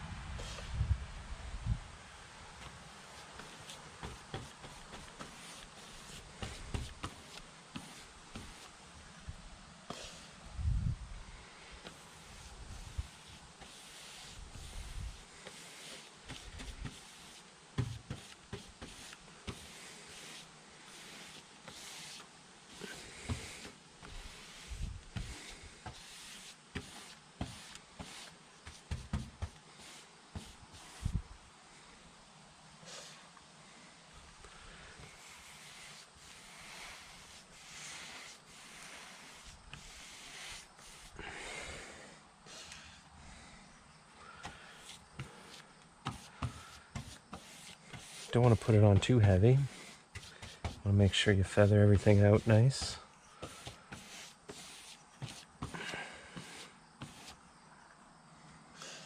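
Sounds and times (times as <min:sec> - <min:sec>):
paint brush swishing: 0:02.6 - 0:08.8, 0:11.8 - 0:31.2, 0:35.0 - 0:41.2, 0:44.5 - 0:57.4.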